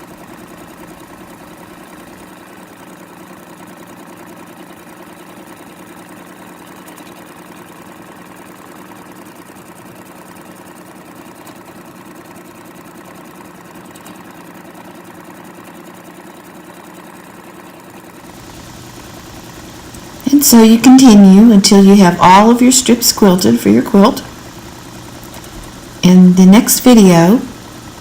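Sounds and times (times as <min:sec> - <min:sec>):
sewing machine running: 0:00.0 - 0:10.6, 0:17.9 - 0:28.0.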